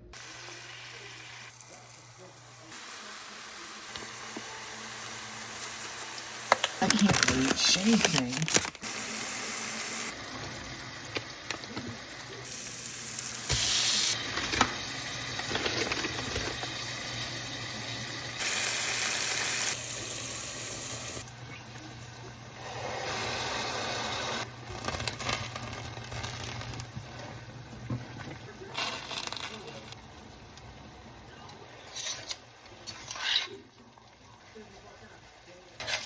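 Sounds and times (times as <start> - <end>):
food sizzling in a pan: 0.2 - 6.5, 8.9 - 21.2.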